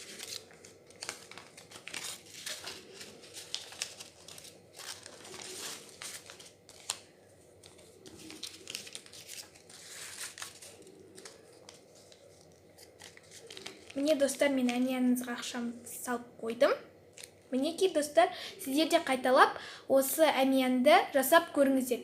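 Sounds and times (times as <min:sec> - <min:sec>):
paper rustling and crinkling: 0:00.0 - 0:14.9.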